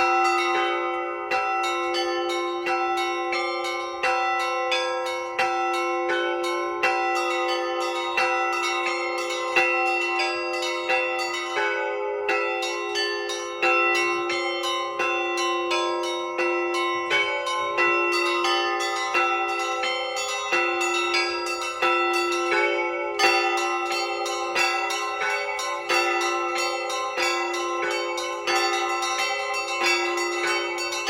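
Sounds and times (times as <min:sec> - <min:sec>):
large bells ringing: 0:00.0 - 0:31.0
small bells struck rapidly: 0:12.3 - 0:31.0.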